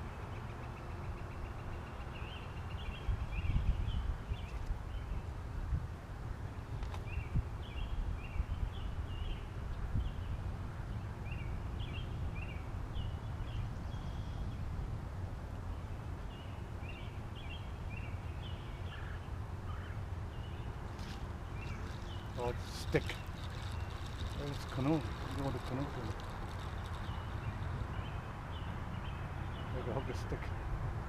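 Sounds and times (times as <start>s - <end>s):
small bird chirping: 20.4s - 29.8s.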